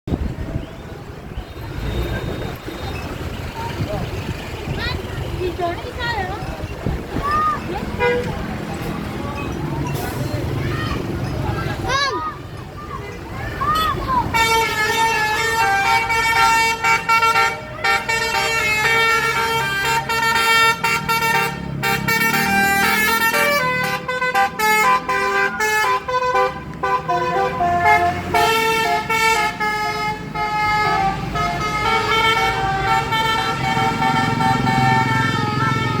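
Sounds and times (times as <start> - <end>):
bus engine running: 0.1 - 36.0
bus musical air horn tune: 14.3 - 36.0.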